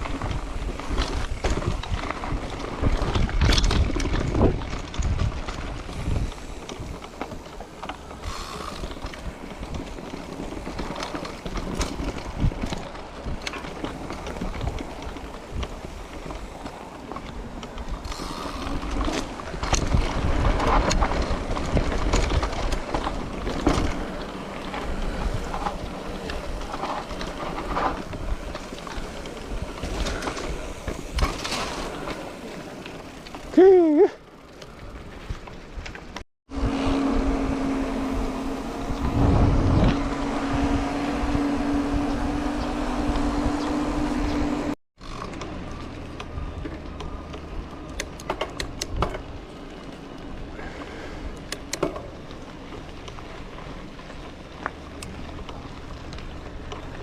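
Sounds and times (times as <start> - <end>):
wind buffeting microphone: 0.0 - 32.1, 34.3 - 44.8
bike knocks and rattles: 0.0 - 36.2, 42.0 - 57.0
low rolling rumble: 34.3 - 44.8.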